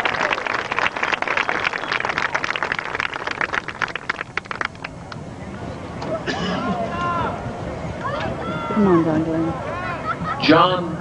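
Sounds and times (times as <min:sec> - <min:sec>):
crowd applauding: 0:00.0 - 0:05.0.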